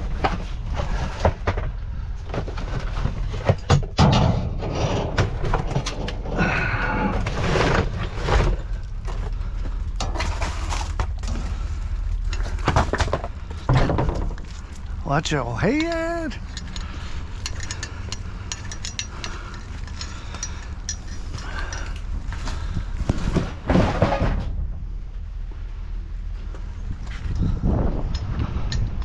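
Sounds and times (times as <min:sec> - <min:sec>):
junk rummaged in a dumpster: 0:00.0 - 0:25.2
wind rumble on microphone: 0:16.3 - 0:29.0.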